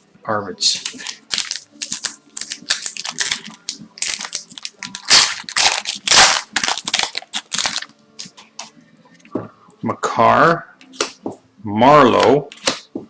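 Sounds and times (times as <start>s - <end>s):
foil wrapper crinkling: 0.7s - 8.3s
cards being handled: 0.7s - 8.7s, 10.8s - 11.4s, 12.2s - 13.0s.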